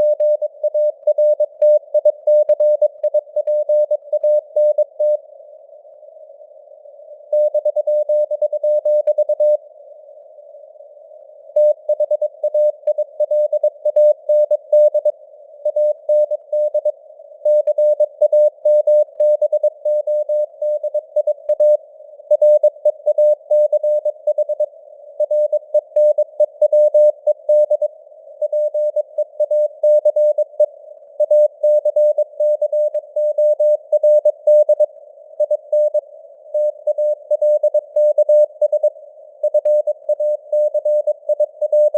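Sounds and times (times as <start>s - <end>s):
morse code beeps: 11.6s - 15.1s, 17.5s - 36.0s, 36.6s - 41.9s.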